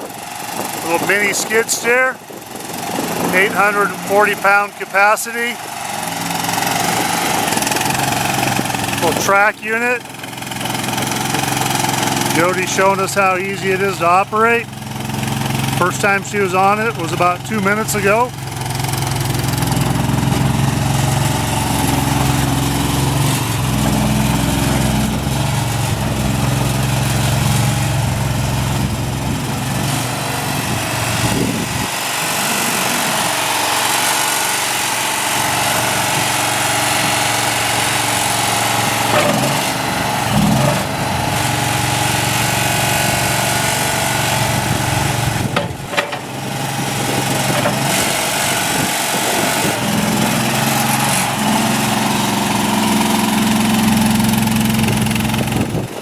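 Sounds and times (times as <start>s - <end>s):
small engine humming: 0.0s - 56.0s
sharp knocks: 45.5s - 46.3s.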